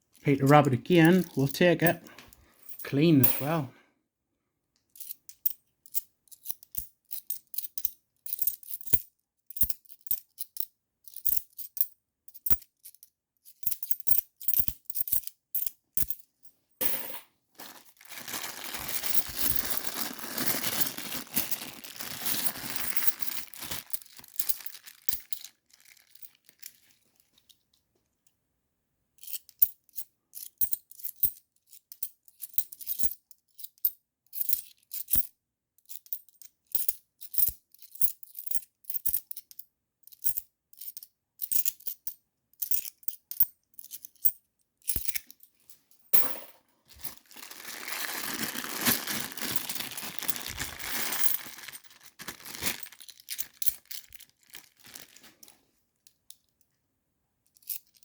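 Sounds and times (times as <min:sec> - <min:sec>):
coins clicking and clinking: 0:02.7 - 0:03.6, 0:05.0 - 0:16.2, 0:16.8 - 0:17.2, 0:18.9 - 0:20.0, 0:22.2 - 0:25.4, 0:40.2 - 0:45.4, 0:49.5 - 0:51.9
rustling: 0:17.5 - 0:27.5, 0:46.9 - 0:55.7.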